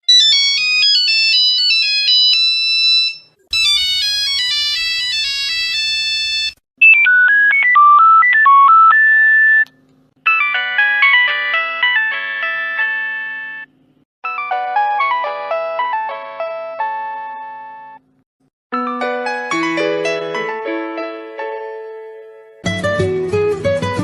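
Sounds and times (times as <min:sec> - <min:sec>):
mobile phone ringtones: 0:00.1 - 0:09.7, 0:10.3 - 0:13.7.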